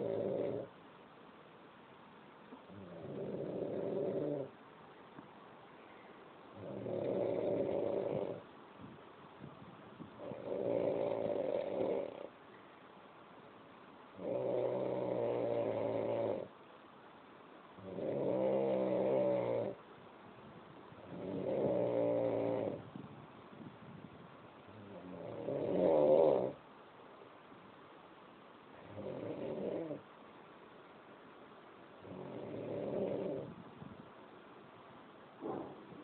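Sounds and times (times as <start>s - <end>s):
person snoring: 2.7s - 4.5s, 6.6s - 8.4s, 14.2s - 16.5s, 17.8s - 19.8s.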